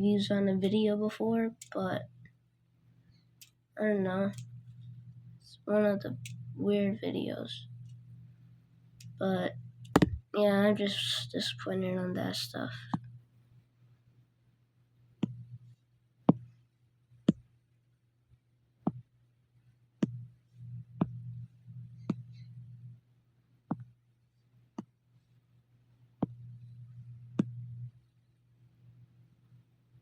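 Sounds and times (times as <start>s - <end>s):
low hum: 0.0s - 13.4s, 20.0s - 23.2s, 26.2s - 29.8s.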